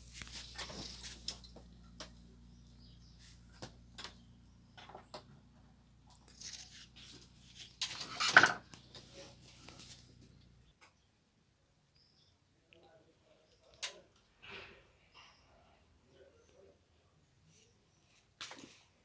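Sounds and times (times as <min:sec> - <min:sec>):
hands handling wires and parts: 0:00.0 - 0:10.5
rustling clatter: 0:00.0 - 0:10.7.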